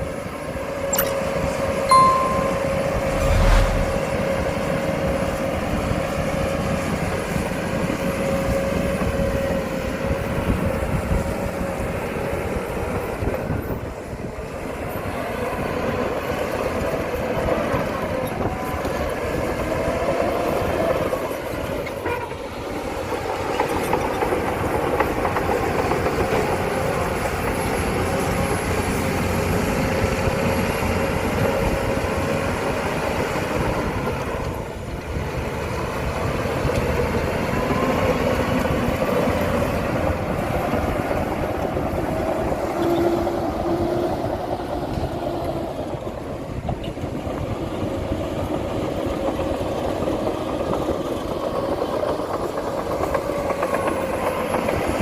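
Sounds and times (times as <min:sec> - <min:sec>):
held whine: 0:01.0 - 0:04.1.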